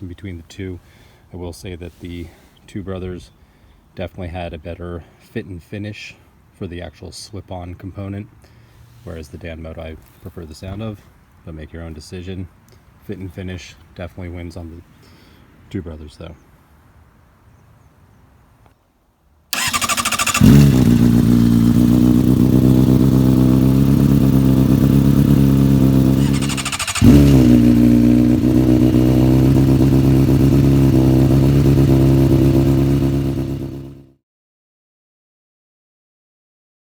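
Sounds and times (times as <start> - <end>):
motorcycle engine revving and idling: 19.6 - 34.2.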